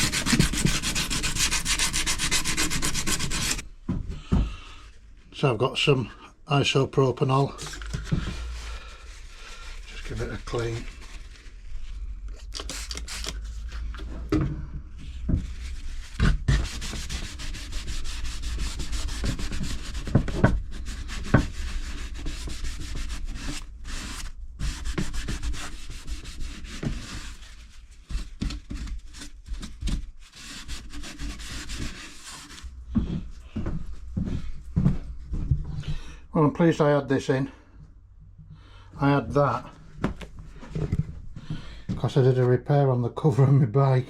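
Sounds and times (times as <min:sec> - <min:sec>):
cloth rubbing over plastic: 0:07.4 - 0:13.9.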